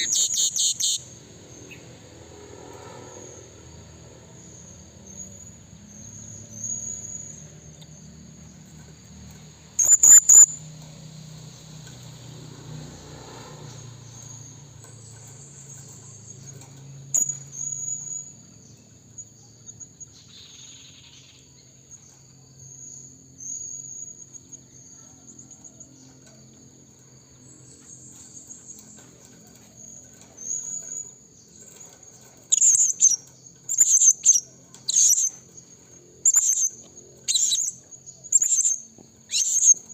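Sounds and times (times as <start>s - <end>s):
parrot high-pitched calls: 0.0s - 1.0s, 9.8s - 10.6s, 32.5s - 35.3s, 36.2s - 39.9s
high insect drone: 0.0s - 39.9s.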